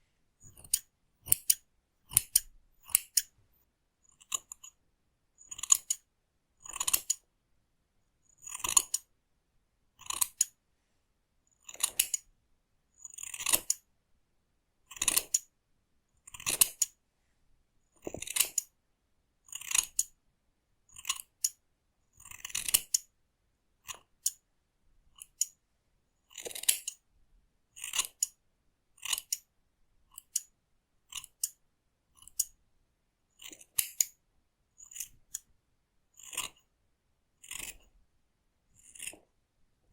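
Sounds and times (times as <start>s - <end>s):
scissors snipping hair: 0.4s - 3.3s.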